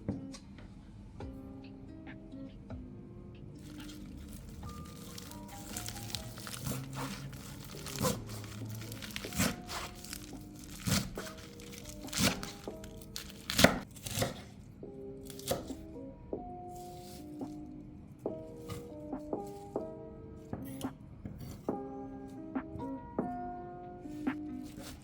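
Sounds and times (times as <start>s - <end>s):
background music with stepping melody: 0.0s - 25.0s
food crinkling: 3.6s - 14.2s.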